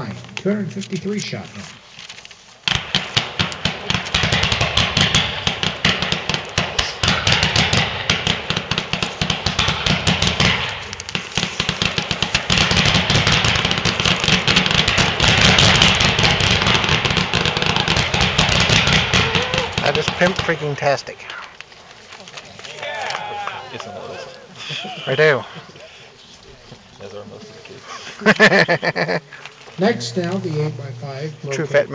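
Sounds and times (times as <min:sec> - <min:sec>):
firework launch pops: 0:02.6 - 0:20.7.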